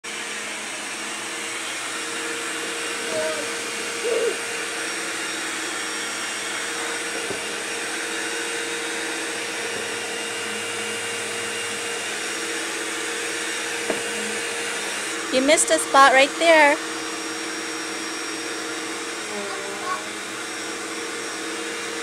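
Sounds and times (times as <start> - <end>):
vacuum cleaner running: 0.0 - 22.0.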